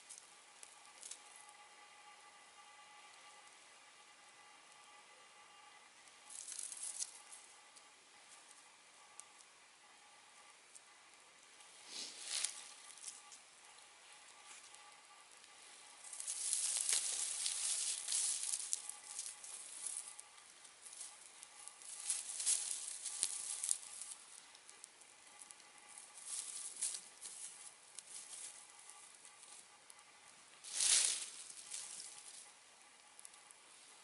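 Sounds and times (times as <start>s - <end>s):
campfire crackling and hissing: 0.0s - 34.0s.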